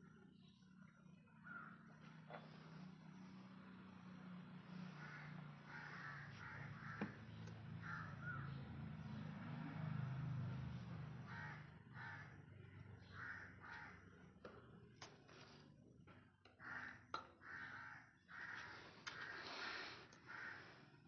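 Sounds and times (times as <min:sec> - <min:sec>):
harsh bird calls: 0:11.2 - 0:14.2.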